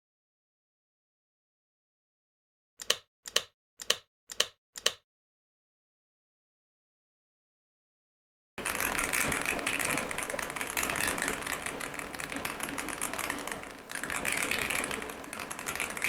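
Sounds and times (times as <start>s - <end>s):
typing on mechanical keyboard: 8.6s - 16.0s.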